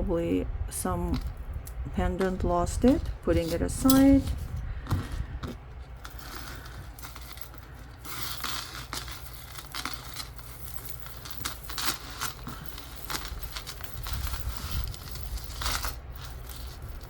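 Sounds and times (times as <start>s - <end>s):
jewelry clicking and rustling: 1.0s - 17.0s.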